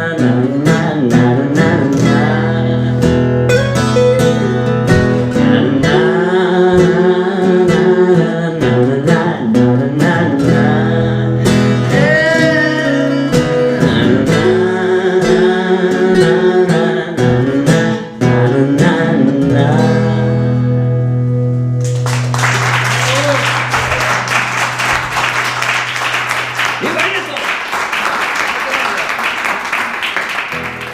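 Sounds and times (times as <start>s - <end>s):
wordless singing: 0.0s - 3.1s, 5.3s - 20.5s
acoustic guitars strumming: 0.0s - 28.4s, 29.0s - 30.9s
audience applause: 21.8s - 30.9s.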